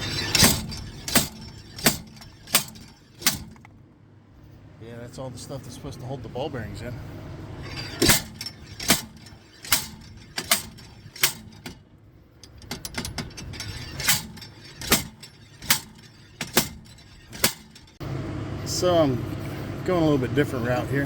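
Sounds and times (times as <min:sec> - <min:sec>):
slide hammer metallic clanks: 0:00.0 - 0:03.8, 0:07.6 - 0:18.0.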